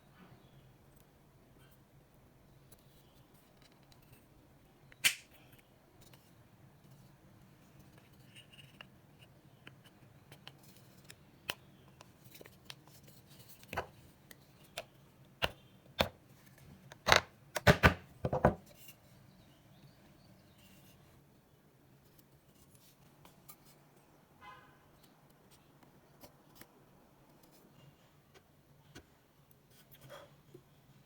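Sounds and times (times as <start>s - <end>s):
tools knocking on wood: 17.7s - 18.6s.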